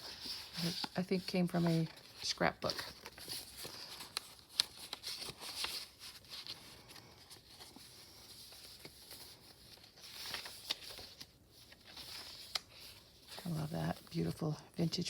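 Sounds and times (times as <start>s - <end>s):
paper rustling: 0.0s - 15.0s.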